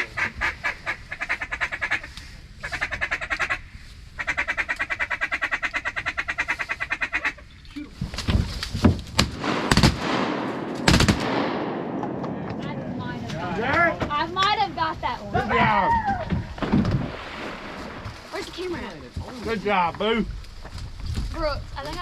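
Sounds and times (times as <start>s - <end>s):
duck call quacking: 0.0s - 3.6s, 4.2s - 7.5s
shotgun shots: 9.1s - 13.0s.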